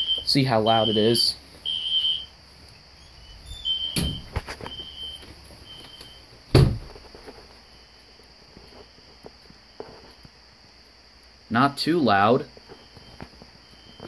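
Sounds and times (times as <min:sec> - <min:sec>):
fire alarm horn beeping: 0:00.0 - 0:02.3
door thudding shut: 0:03.9 - 0:04.4, 0:06.5 - 0:07.0.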